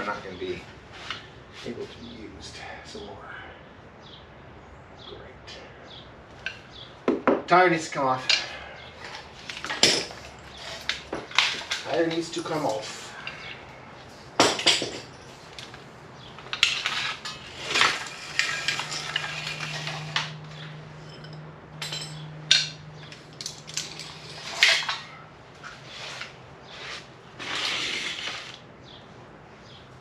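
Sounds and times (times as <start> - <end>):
metal hand tools clinking: 8.3 - 13.6, 16.4 - 25.2
short scrapes: 25.6 - 28.6.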